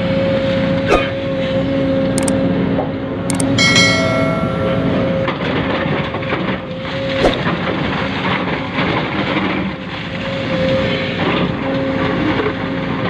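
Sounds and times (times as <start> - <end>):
single click: 3.3 - 3.6.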